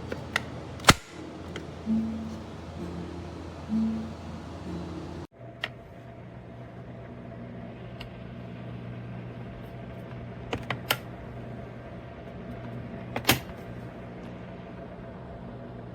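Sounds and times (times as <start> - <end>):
quick clicks: 0.0 - 1.7
appliance low hum: 0.0 - 15.9.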